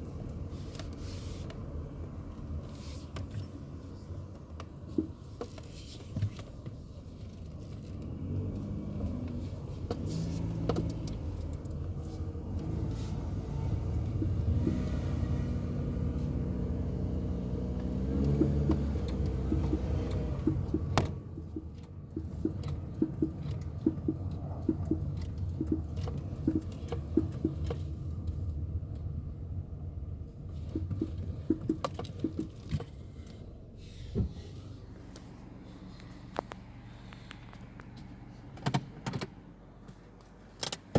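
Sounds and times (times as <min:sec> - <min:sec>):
car rumble: 0:00.0 - 0:40.9
car chassis knocking: 0:18.0 - 0:27.9, 0:30.6 - 0:33.0.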